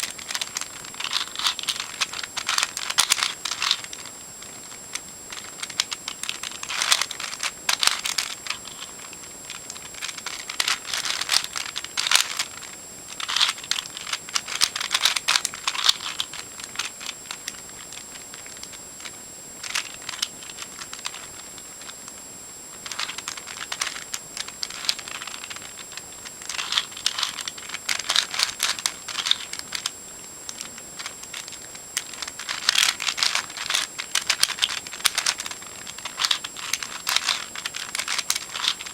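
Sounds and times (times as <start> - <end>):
puzzle cube clicking and rattling: 0.0 - 22.0, 22.7 - 38.9.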